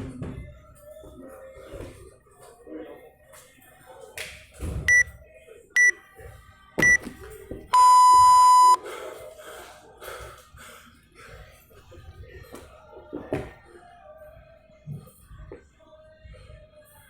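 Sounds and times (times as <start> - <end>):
long lower timer beep: 7.8 - 8.8
short high timer beeps: 7.8 - 8.8.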